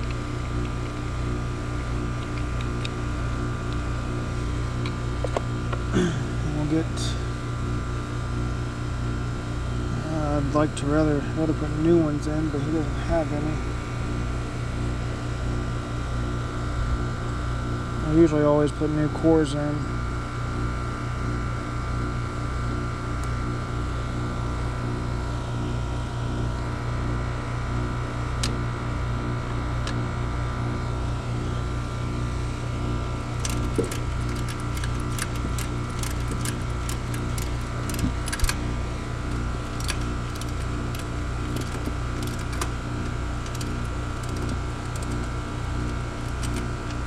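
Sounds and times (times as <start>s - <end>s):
machine hum with low throb: 0.0s - 47.0s
hand tools clicking on metal: 33.4s - 38.6s, 39.3s - 47.0s.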